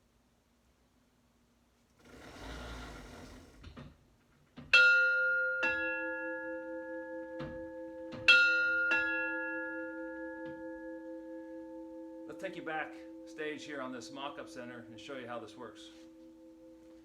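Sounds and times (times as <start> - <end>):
mechanical doorbell ding-dong chime: 4.7 - 14.4.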